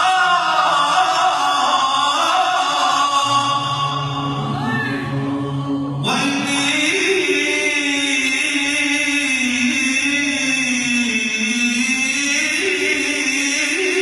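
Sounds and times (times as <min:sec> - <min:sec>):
men chanting: 0:00.0 - 0:10.6.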